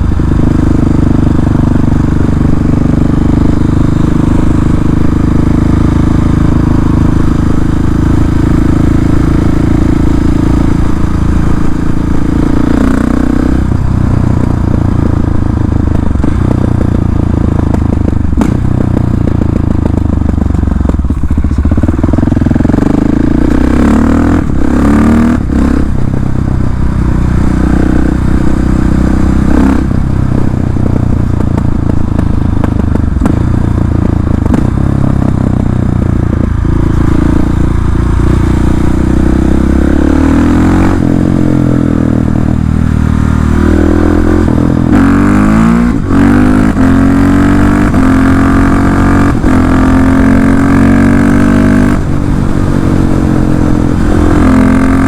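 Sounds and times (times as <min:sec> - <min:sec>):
motorcycle engine revving: 0:00.0 - 0:55.0
exhaust pops: 0:14.4 - 0:22.1.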